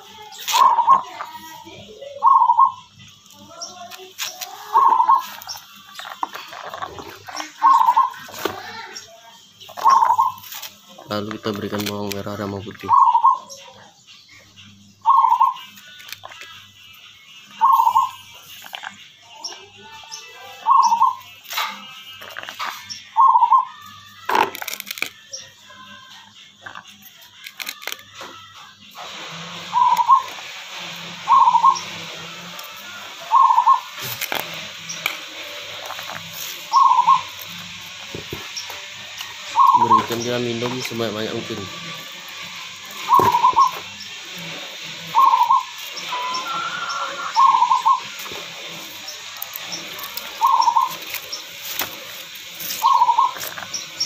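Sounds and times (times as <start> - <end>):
bird warbling call: 0.3 - 1.5, 2.1 - 2.9, 3.6 - 10.6, 12.7 - 13.8, 15.0 - 16.1, 17.5 - 18.3, 20.1 - 21.8, 22.8 - 24.4, 29.6 - 30.5, 31.2 - 32.1, 32.8 - 37.7, 38.4 - 44.2, 45.1 - 54.0
steady hiss: 28.9 - 54.0.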